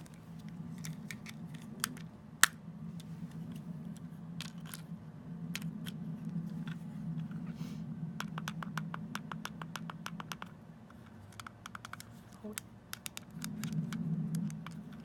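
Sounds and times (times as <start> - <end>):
steady low hum: 0.0 - 15.0
plastic clicks and taps: 8.2 - 15.0.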